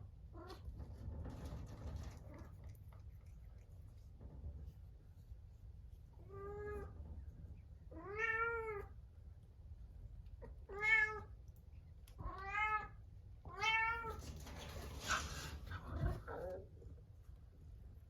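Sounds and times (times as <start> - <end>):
cat meowing: 7.9 - 8.9, 10.7 - 11.3, 12.2 - 14.2.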